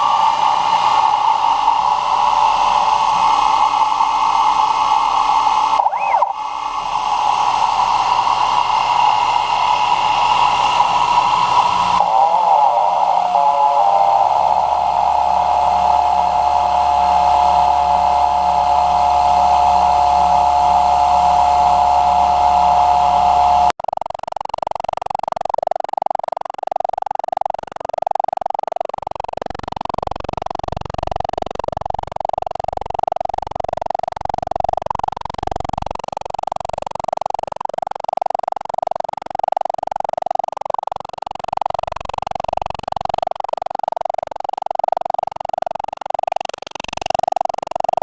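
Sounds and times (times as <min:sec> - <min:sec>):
milling machine spindle whine: 0:00.0 - 0:23.7.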